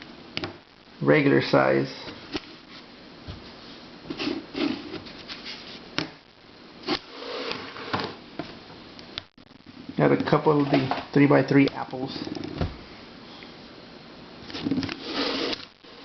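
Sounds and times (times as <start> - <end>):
rustling: 2.2 - 5.9.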